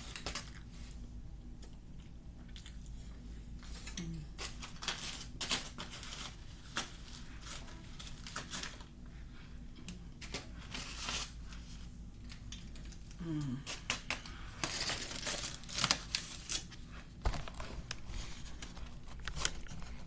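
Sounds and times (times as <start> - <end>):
crunching and chewing: 0.0 - 9.0, 9.7 - 20.0.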